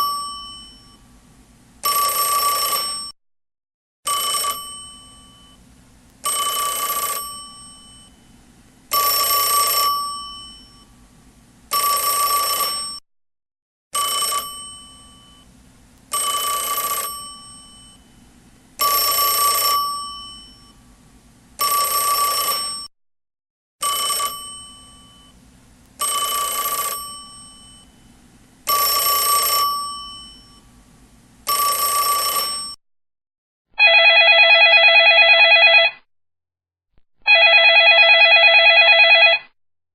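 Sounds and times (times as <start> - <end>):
telephone bell ringing: 0.0 - 1.0, 1.8 - 3.1, 4.1 - 5.6, 6.2 - 8.3, 8.9 - 10.9, 11.7 - 13.0, 14.0 - 15.5, 16.1 - 18.2, 18.8 - 20.8, 21.6 - 22.9, 23.8 - 25.4, 26.0 - 28.1, 28.7 - 30.6, 31.5 - 32.8, 33.8 - 36.0, 37.3 - 39.6.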